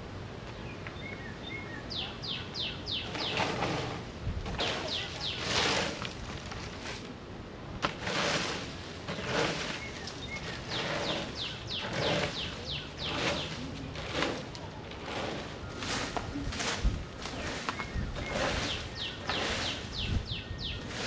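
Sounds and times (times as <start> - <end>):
bird chirping: 0.5 - 3.7, 4.6 - 5.9, 9.6 - 13.9, 17.4 - 21.0
rake scraping leaves and dirt: 2.9 - 21.0.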